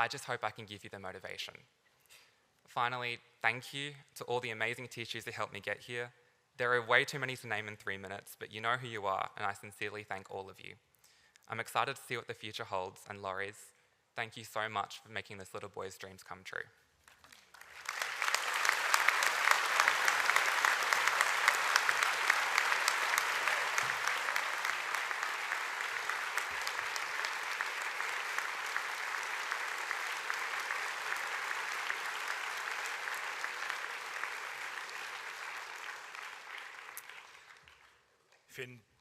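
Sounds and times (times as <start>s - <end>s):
audience applauding: 17.0s - 38.0s.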